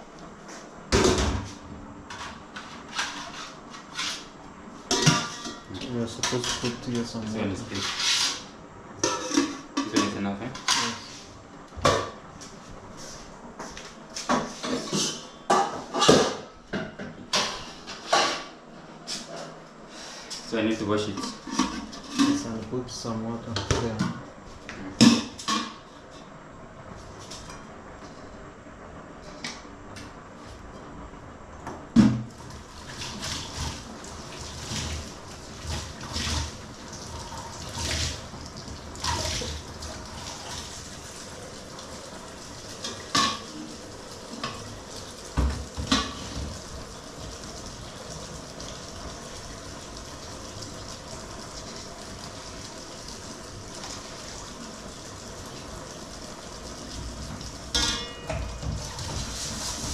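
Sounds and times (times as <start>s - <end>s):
water splashing and sloshing: 32.0s - 59.9s.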